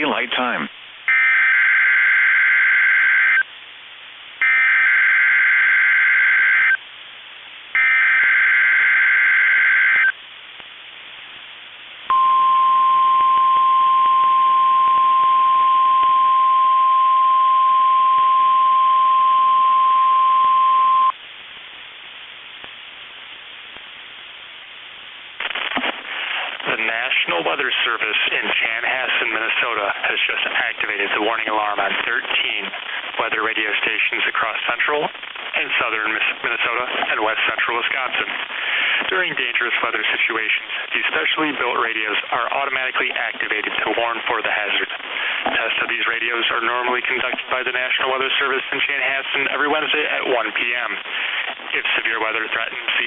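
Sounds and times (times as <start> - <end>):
single-pitch warning alarm tone: 1.1 - 3.4, 4.4 - 6.8, 7.8 - 10.1, 12.1 - 21.1.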